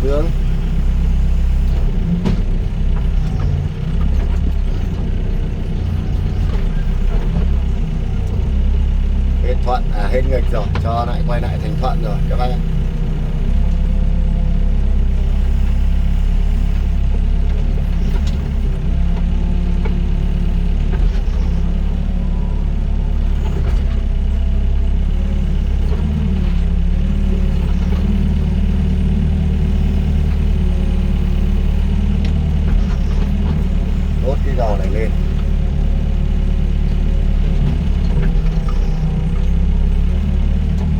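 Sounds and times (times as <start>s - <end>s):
excavator diesel engine under load: 0.0s - 40.9s.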